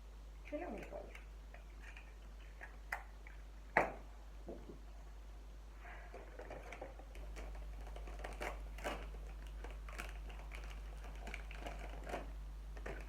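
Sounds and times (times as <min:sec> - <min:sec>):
packaging clicking and crinkling: 0:06.1 - 0:13.0.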